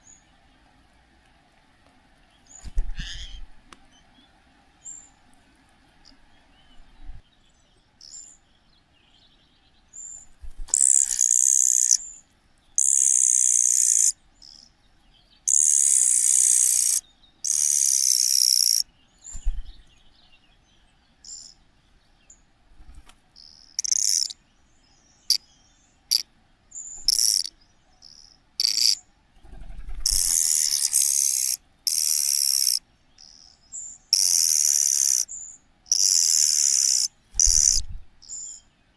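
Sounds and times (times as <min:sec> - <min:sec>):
young cuckoo begging calls: 0:02.9 - 0:03.5, 0:10.7 - 0:12.2, 0:12.8 - 0:14.6, 0:15.5 - 0:18.8, 0:23.7 - 0:24.4, 0:26.9 - 0:29.0, 0:30.0 - 0:38.5.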